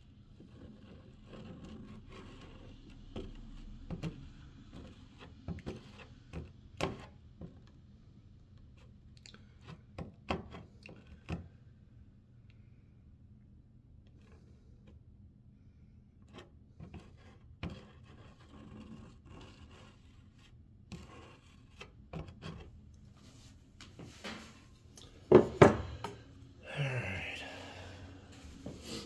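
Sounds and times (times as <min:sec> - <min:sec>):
steady low hum: 0:23.8 - 0:29.0.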